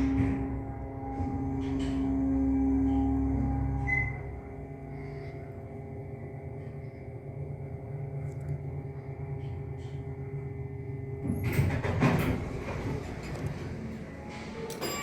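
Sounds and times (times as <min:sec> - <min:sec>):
elevator doors sliding: 0:00.0 - 0:04.7, 0:11.2 - 0:15.0
elevator pump motor humming: 0:00.0 - 0:15.0.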